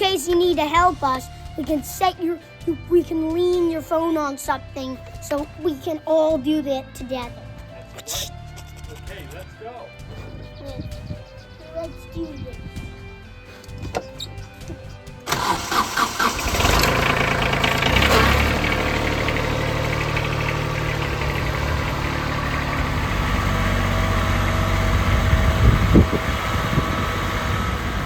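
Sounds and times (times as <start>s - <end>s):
chainsaw starting and idling: 15.3s - 25.7s.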